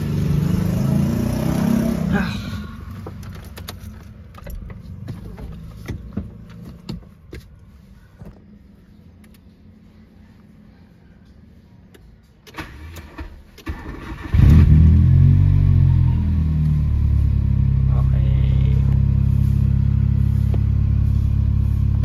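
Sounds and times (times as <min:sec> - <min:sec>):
car starter cranking: 0:12.4 - 0:14.9
car engine running: 0:14.4 - 0:22.0.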